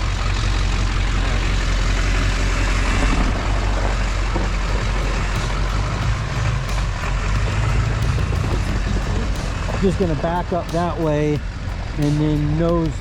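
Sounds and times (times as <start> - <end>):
rush of noise: 0.0 - 13.0
truck engine running: 0.0 - 13.0.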